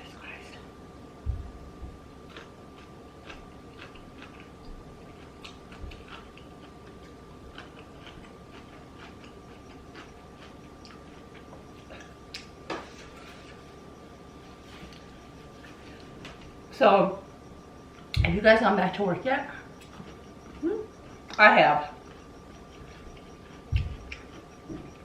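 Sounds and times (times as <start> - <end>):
person chewing: 2.2 - 13.8, 22.1 - 25.0.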